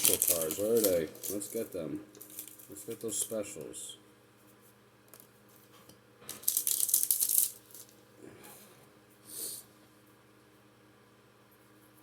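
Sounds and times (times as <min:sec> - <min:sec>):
foil wrapper crinkling: 0:00.0 - 0:03.4, 0:06.3 - 0:08.0.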